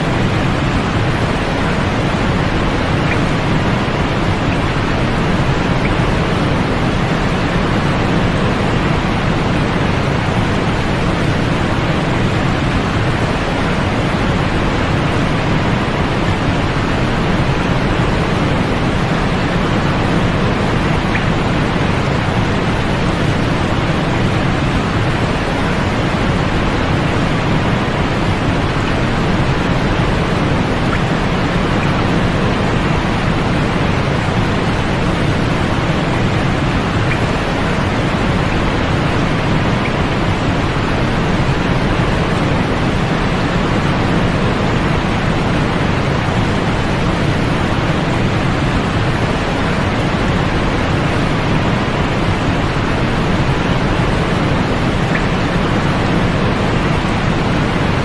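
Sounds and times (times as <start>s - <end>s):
steady white noise hiss: 0.0s - 58.0s.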